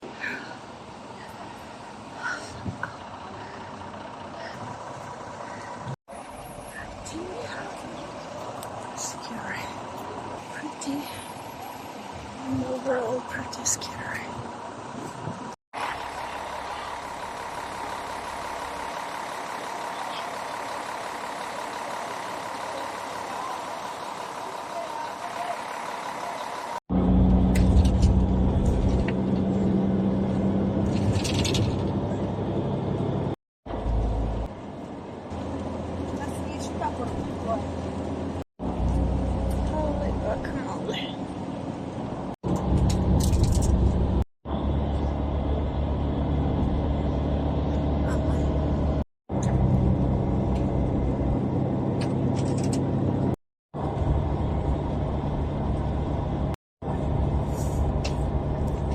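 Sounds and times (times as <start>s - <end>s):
vehicle engine humming: 0.0s - 58.9s
low rumble: 36.9s - 58.9s.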